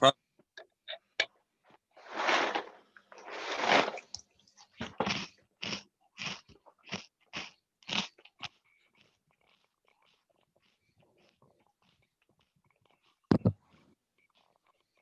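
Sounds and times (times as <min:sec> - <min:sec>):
rustling: 0:01.9 - 0:04.8.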